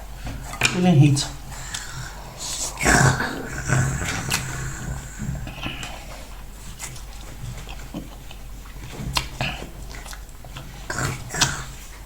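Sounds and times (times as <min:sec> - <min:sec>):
chewing food: 0:01.4 - 0:12.0
wet mouth clicks: 0:01.7 - 0:06.2, 0:09.1 - 0:12.0.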